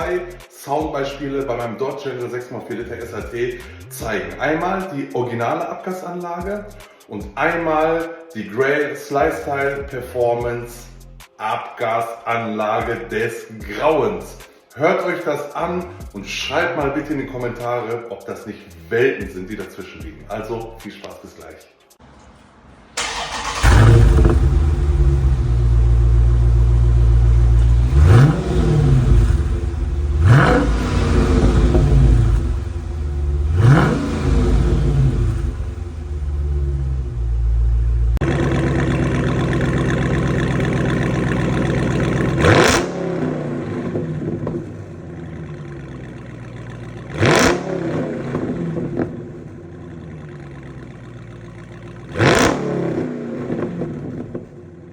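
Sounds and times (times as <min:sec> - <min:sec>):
car engine idling: 0:22.5 - 0:54.9
engine throttle blips: 0:23.0 - 0:54.4.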